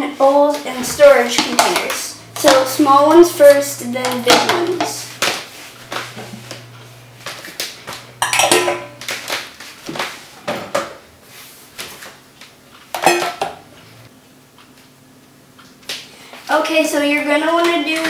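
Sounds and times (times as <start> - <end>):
dishes clattering in dishwasher rack: 8.2 - 9.1, 13.0 - 13.7.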